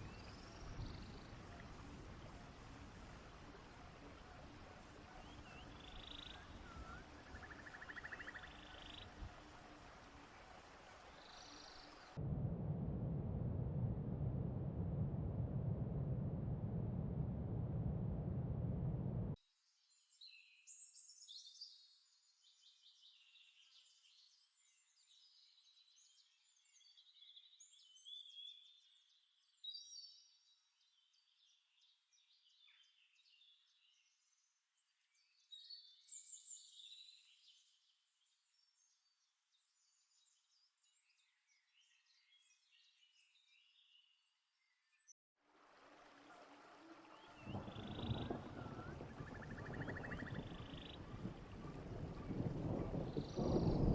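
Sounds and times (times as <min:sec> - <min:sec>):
faint birdsong: 0:00.0 - 0:12.2, 0:18.1 - 0:45.2, 0:45.8 - 0:53.9
low rushing noise: 0:12.2 - 0:19.4, 0:45.8 - 0:53.9.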